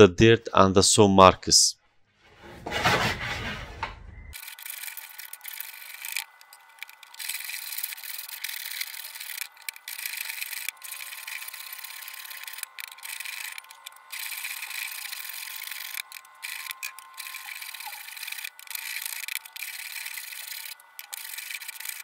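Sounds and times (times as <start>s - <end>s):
hand plane shaving wood: 2.3s - 3.8s, 6.8s - 22.0s.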